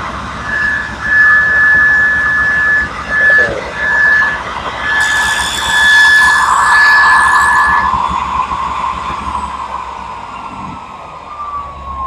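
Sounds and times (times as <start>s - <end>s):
saw blade coasting down: 3.1s - 10.6s
table saw cutting: 3.1s - 10.6s.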